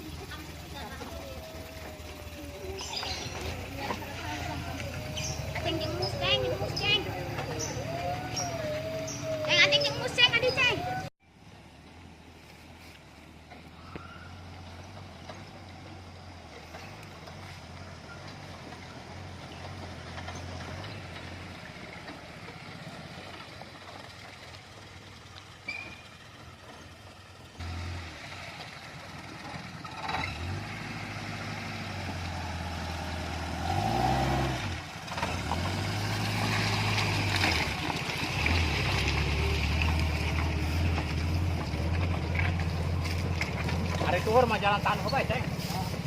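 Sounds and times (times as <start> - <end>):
car engine revving: 0.0 - 11.1, 27.6 - 46.0
road noise: 0.0 - 46.0.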